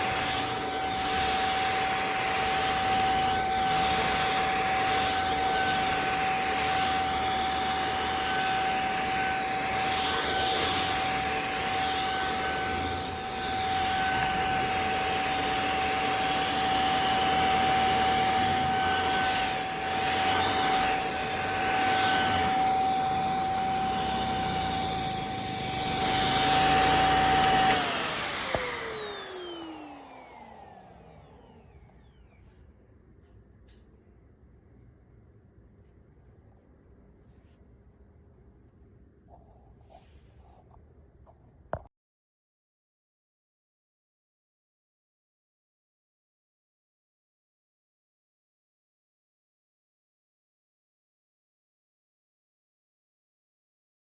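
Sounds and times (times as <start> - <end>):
motor spinning down: 0.0 - 32.4
vacuum cleaner whining: 0.0 - 33.8.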